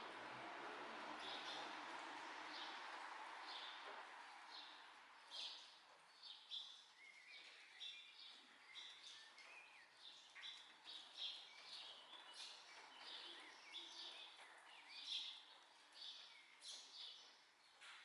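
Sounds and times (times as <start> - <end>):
faint birdsong chirps: 4.5 - 18.0.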